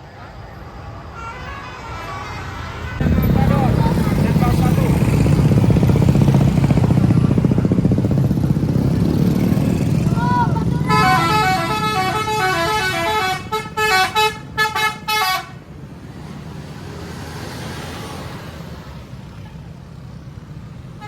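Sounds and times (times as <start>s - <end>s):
rumble of engines and traffic: 0.0s - 21.0s
musical bus air horn melody: 1.2s - 3.7s, 10.8s - 15.6s.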